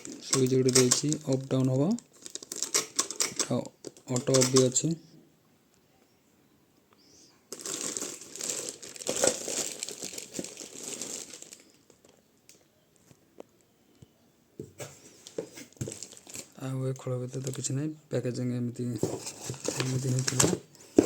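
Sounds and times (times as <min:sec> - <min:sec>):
packaging crinkling and rustling: 0:00.0 - 0:04.9, 0:07.5 - 0:13.2, 0:15.0 - 0:17.7, 0:19.0 - 0:21.0.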